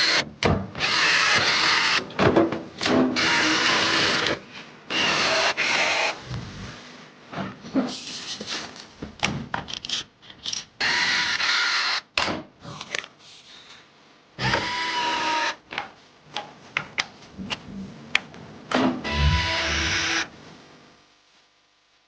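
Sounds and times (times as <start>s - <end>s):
noisy whirring: 5.0s - 7.2s, 19.0s - 21.1s.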